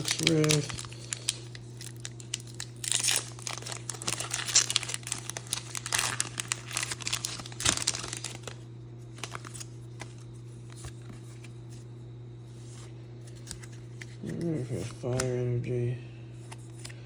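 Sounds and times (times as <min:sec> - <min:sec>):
foil wrapper crinkling and tearing: 0:00.0 - 0:11.2
steady low hum: 0:00.0 - 0:17.0.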